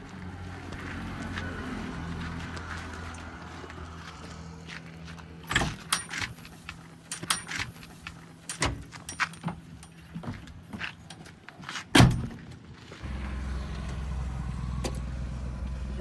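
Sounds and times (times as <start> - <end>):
diesel engine running: 0.0 - 9.4, 13.0 - 16.0
sharp metallic clanks: 5.5 - 10.2.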